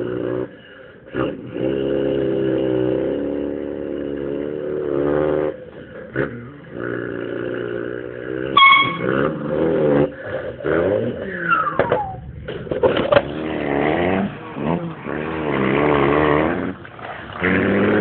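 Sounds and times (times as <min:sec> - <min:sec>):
person imitating truck engine: 0:00.0 - 0:12.4
mouth horn imitation: 0:08.5 - 0:09.4.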